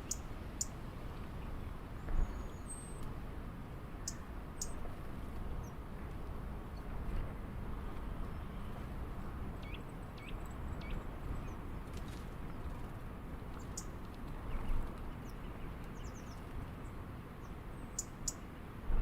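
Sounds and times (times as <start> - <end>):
small birds chirping: 0.0 - 0.7, 4.0 - 4.8, 13.5 - 18.6
outdoor background hum: 0.0 - 19.0.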